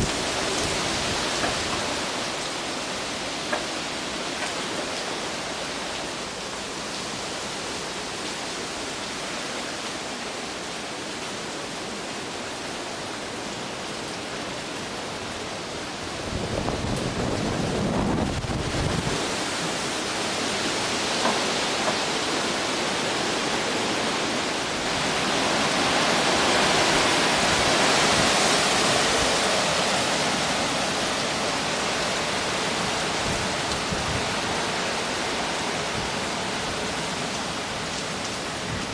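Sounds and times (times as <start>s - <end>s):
heavy rain: 0.0s - 38.9s
hurricane wind: 0.0s - 38.9s
wind buffeting microphone: 16.2s - 19.4s.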